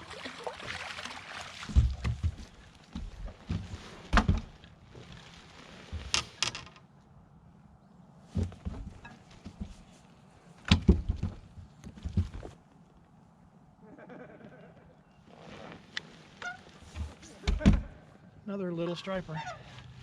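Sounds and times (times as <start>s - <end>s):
thumps and knocks on a boat: 1.6s - 4.7s, 8.3s - 9.9s, 10.6s - 12.6s, 16.9s - 18.0s.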